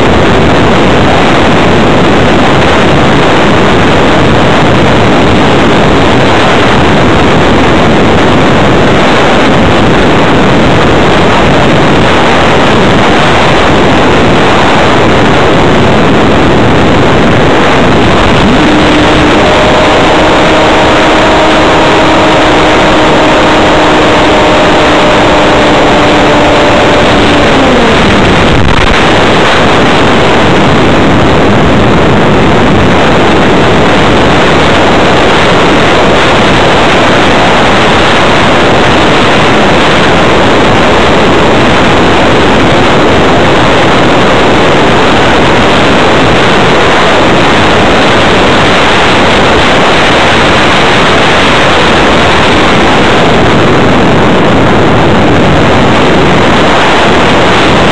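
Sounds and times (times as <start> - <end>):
wind rush on microphone: 0.0 - 57.9
electric motor and propeller whining: 17.6 - 30.7.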